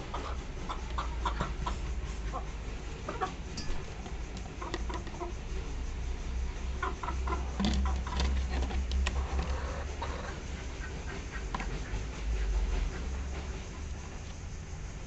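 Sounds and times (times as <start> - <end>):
chickens clucking softly: 0.0 - 5.5, 6.8 - 13.0.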